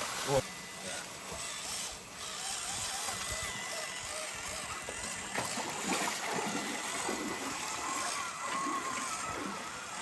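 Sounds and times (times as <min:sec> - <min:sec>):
river water babbling: 0:00.0 - 0:01.2
small water splashes: 0:04.5 - 0:10.0.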